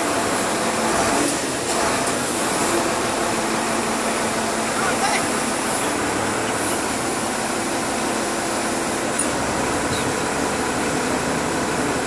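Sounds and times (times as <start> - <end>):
heavy machinery engine running: 0.0 - 12.0.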